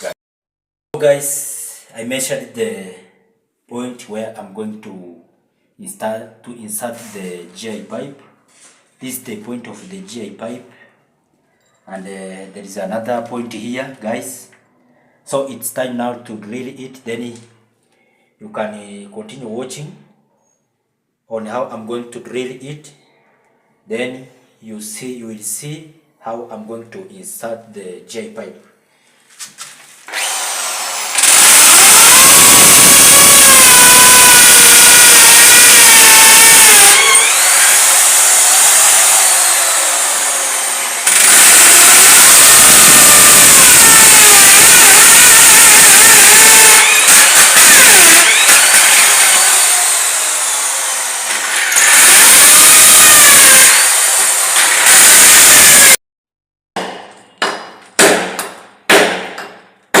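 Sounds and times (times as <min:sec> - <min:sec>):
electric drill boring: 0:30.1 - 0:56.0.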